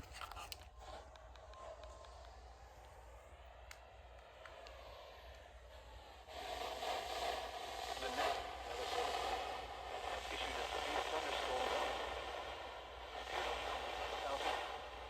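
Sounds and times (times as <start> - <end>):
radio static hissing and crackling: 4.6 - 15.0
faint voice on radio: 7.9 - 12.5, 13.2 - 14.9.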